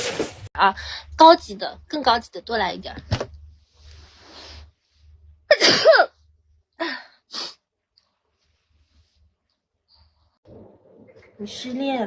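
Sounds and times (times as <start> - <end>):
woman sneezing: 5.5 - 6.2.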